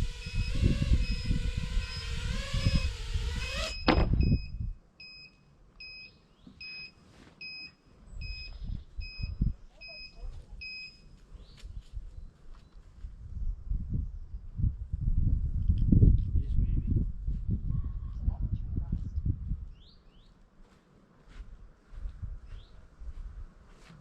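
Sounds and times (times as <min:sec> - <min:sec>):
motors cutting off with a thump: 0:00.0 - 0:04.4
quadcopter motors whining: 0:00.0 - 0:04.4
high electronic beep: 0:03.7 - 0:11.0.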